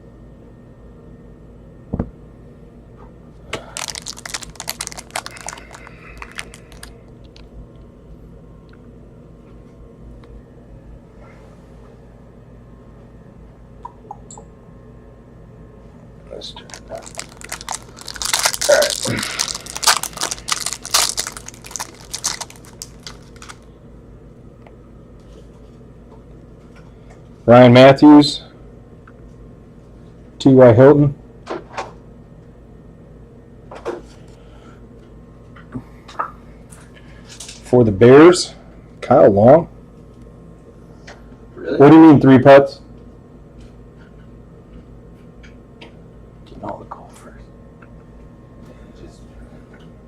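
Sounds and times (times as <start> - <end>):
foil wrapper crinkling: 3.6 - 7.5, 16.6 - 23.6.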